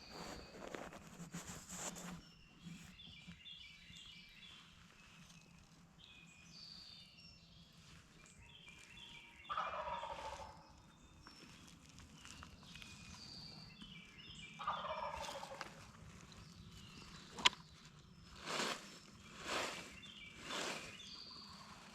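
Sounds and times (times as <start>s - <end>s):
songbirds chirping: 0.0s - 21.9s
turkey gobbling: 9.5s - 10.6s, 14.6s - 15.7s.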